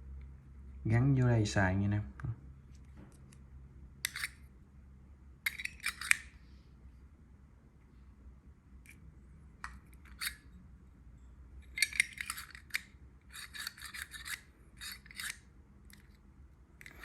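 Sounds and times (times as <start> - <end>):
metal parts scraping and rubbing: 4.0 - 4.4, 5.5 - 6.4, 10.0 - 10.5, 11.6 - 16.2.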